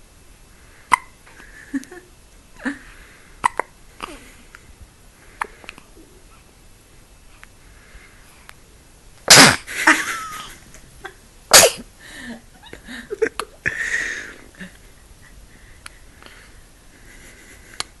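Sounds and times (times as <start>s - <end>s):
loud sharp sneezes: 9.3s - 9.7s, 11.5s - 11.8s
snuffling and breathing: 12.2s - 18.0s.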